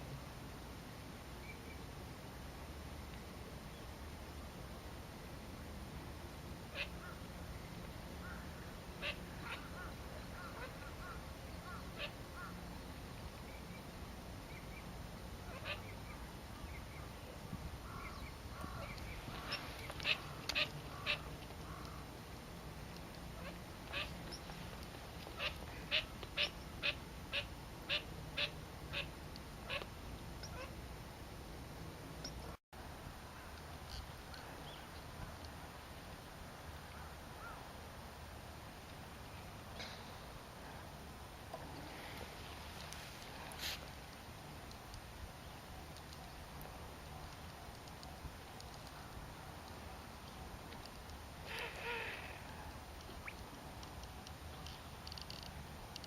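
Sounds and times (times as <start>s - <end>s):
coot calling: 51.4s - 52.7s.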